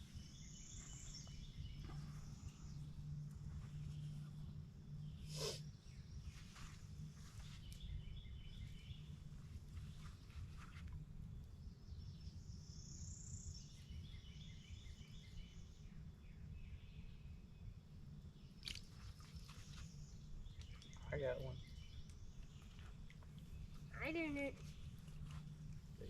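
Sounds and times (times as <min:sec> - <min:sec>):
steady low rumble: 0:00.0 - 0:19.2
birds chirping rapidly: 0:19.6 - 0:26.0.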